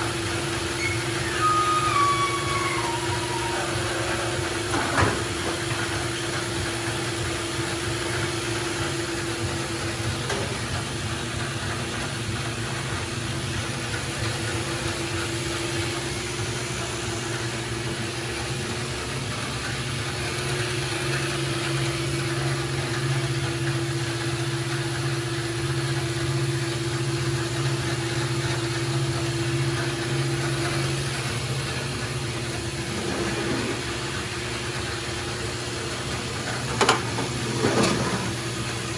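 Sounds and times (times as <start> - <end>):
band saw motor hum: 0.4 - 5.9.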